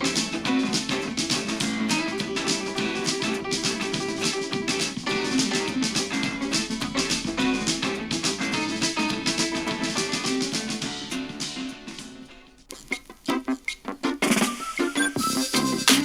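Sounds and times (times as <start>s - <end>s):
music with plucked guitar: 0.0s - 16.0s.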